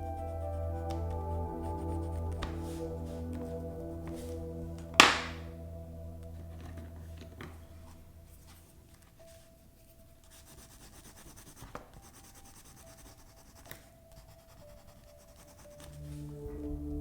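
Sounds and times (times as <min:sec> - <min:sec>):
crayon scribbling on paper: 0:00.0 - 0:03.5, 0:09.8 - 0:16.4
sharp taps: 0:05.0 - 0:05.4.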